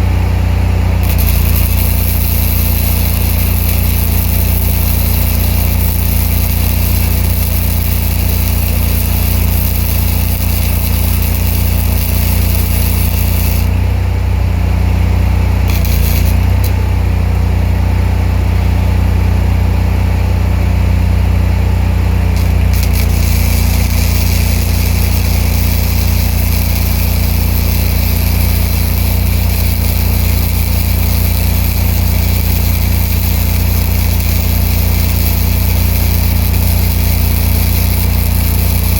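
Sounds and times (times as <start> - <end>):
engine-like hum: 0.0 - 38.9
welding arc crackling: 1.0 - 14.0, 15.6 - 17.0, 22.3 - 38.9.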